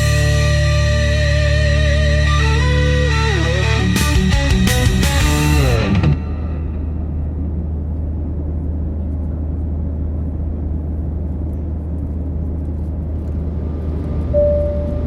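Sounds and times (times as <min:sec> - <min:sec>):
low engine rumble: 0:00.0 - 0:15.0
held tone: 0:14.4 - 0:15.0.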